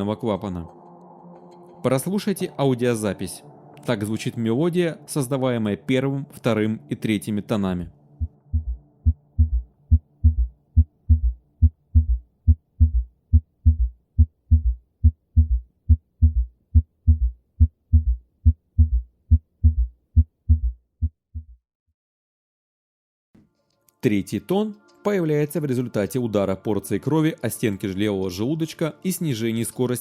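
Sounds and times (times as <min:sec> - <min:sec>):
heartbeat gallop thuds: 0:08.2 - 0:21.6.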